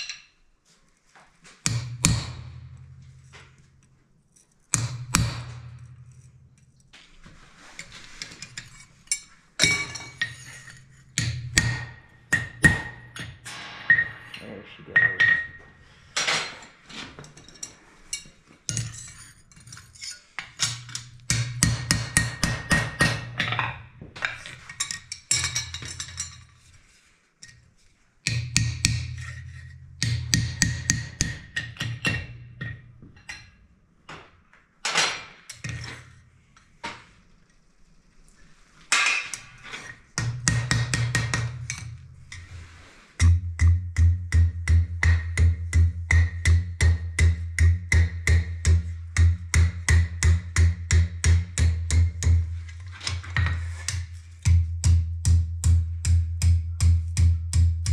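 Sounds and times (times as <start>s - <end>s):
hammer striking hot iron: 1.6s - 3.8s, 4.7s - 6.7s, 8.4s - 16.6s, 20.6s - 26.5s, 28.3s - 33.5s, 38.9s - 42.6s, 43.2s - 57.9s.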